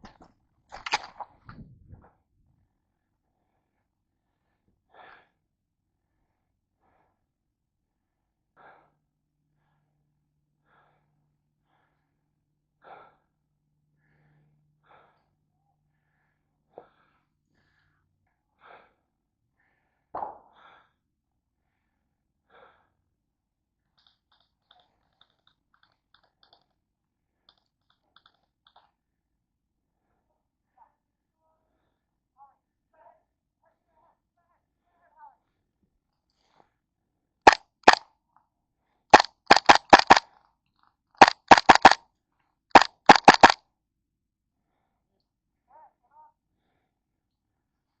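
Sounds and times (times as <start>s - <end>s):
person breathing hard: 10.6s - 13.4s
rapid faint clicks: 37.5s - 38.0s, 39.1s - 40.2s, 41.2s - 42.0s, 42.7s - 43.6s.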